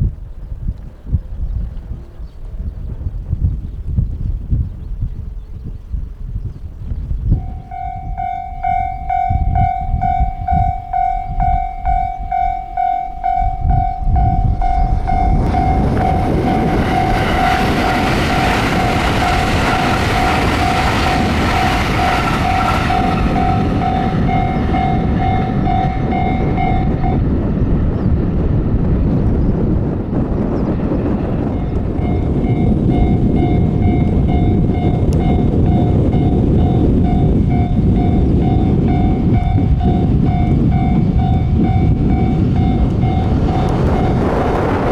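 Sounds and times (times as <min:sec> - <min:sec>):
wind buffeting microphone: 0:00.0 - 0:44.9
level crossing warning bell: 0:07.4 - 0:27.5, 0:31.1 - 0:44.9
train passing: 0:07.4 - 0:44.9.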